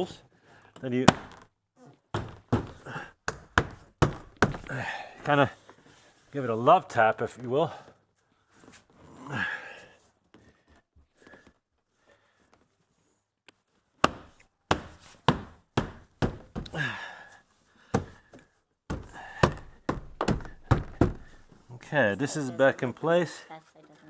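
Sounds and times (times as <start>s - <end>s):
hand thumping plastic door panel: 14.1s - 16.8s, 18.9s - 21.4s.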